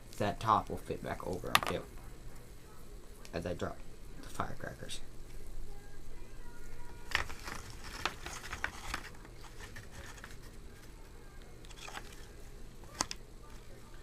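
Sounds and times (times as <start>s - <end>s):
paper rustling: 7.0s - 13.7s.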